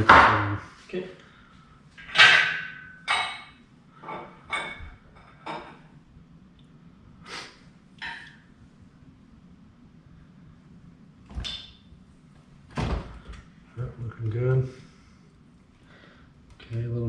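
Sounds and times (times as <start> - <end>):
metal clanks and knocks: 2.0 - 5.8.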